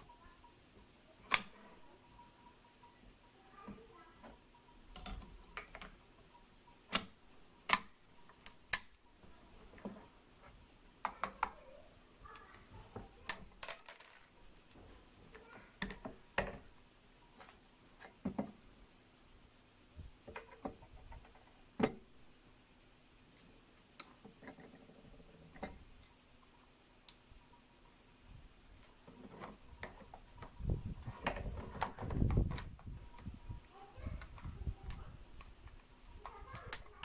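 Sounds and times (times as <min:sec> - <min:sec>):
faint steady hum: 0:00.0 - 0:37.0
hard objects clicking and knocking: 0:03.5 - 0:18.6, 0:20.2 - 0:22.1, 0:28.8 - 0:37.0.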